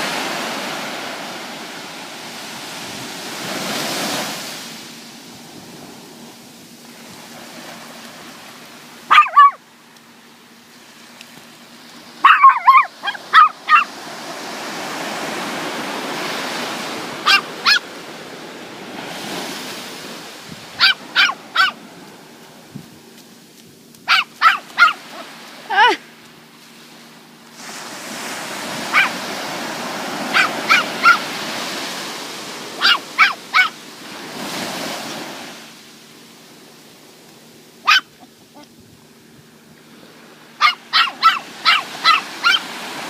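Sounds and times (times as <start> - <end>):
dog barking: 9.1 - 9.6, 12.2 - 14.0, 17.2 - 17.9, 20.8 - 21.8, 24.1 - 25.3, 28.9 - 29.2, 30.2 - 31.3, 32.8 - 33.8, 37.8 - 38.7, 40.6 - 42.7.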